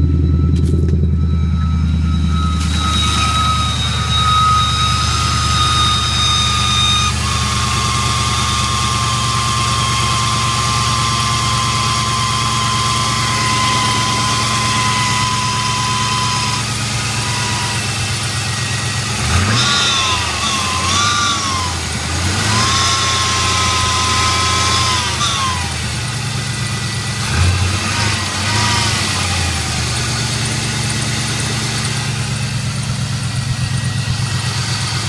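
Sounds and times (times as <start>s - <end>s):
high whine: 0.0s - 27.0s
car engine idling: 0.0s - 35.0s.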